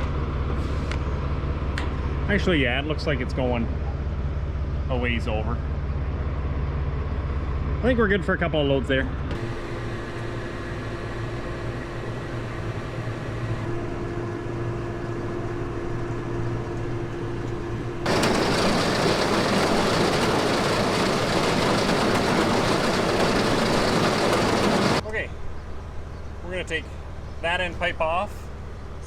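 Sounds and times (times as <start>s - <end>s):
straw chopper and blower running: 18.1s - 25.0s.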